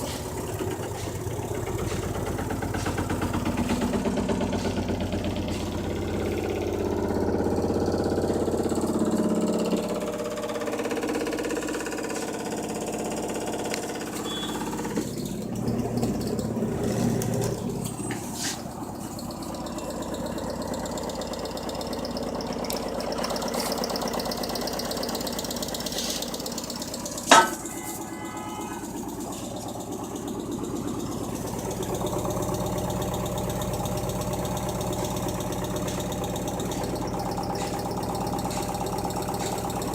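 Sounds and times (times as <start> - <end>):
washing machine humming: 0.0 - 39.9
sharp loud clack: 27.3 - 27.8.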